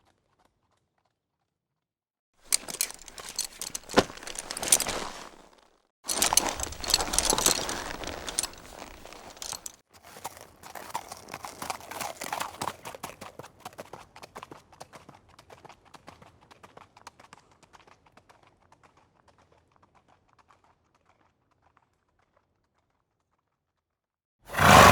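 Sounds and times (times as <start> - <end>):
horse hooves clip-clopping: 2.5 - 5.4, 6.1 - 15.1, 24.5 - 24.9.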